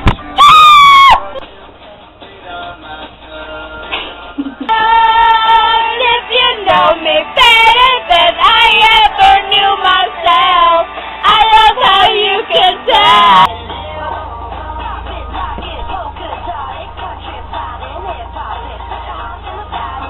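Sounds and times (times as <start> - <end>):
music: 0.0 - 20.0
high-pitched singing voice: 4.7 - 20.0.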